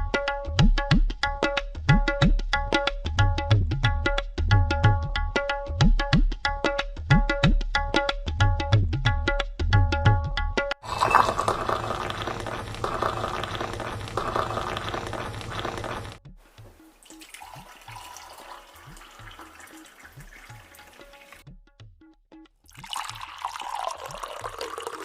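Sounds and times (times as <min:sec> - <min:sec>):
tea pouring: 0:10.8 - 0:21.4, 0:22.7 - 0:25.0.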